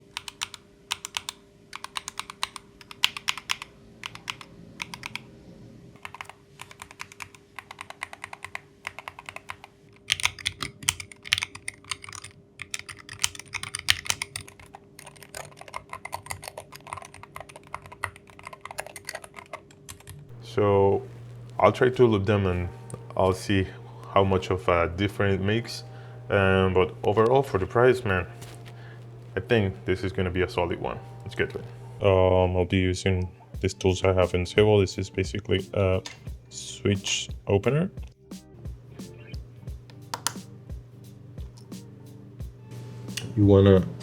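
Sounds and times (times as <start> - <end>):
mechanical keyboard typing: 0.0 - 5.3, 6.0 - 20.3, 39.9 - 40.4
faint steady hum: 20.3 - 44.0.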